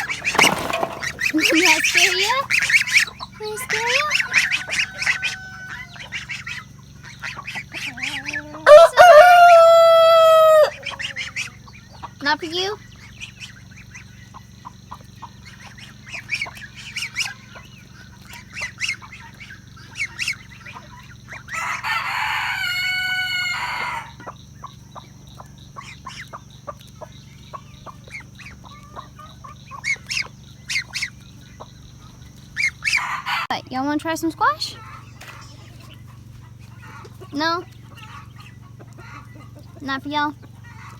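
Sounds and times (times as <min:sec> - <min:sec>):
chickens clucking: 0:00.0 - 0:40.9
rooster crowing: 0:03.8 - 0:06.2, 0:07.9 - 0:11.3, 0:21.5 - 0:24.2, 0:32.8 - 0:33.6.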